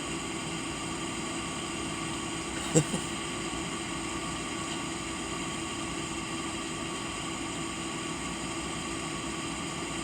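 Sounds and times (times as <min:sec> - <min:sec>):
mechanical hum: 0:00.0 - 0:10.0.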